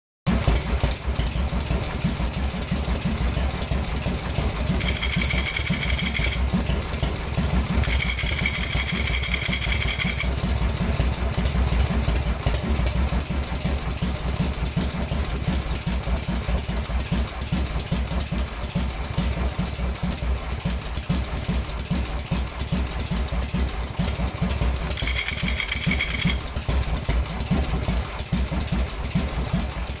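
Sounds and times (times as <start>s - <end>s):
motorcycle engine idling: 0.3s - 30.0s
clutch noise: 2.2s - 12.0s, 23.9s - 27.9s.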